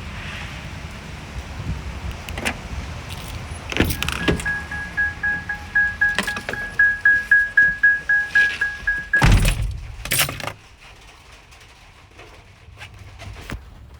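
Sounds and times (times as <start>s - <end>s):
rain and wind rumble: 0.0s - 4.5s, 9.4s - 13.9s
keys and door clicks: 3.1s - 10.6s
van warning chime beeping: 3.3s - 10.5s.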